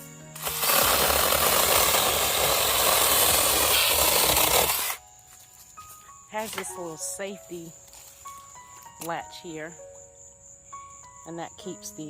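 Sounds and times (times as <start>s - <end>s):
mini chainsaw cutting a branch: 0.0s - 5.0s.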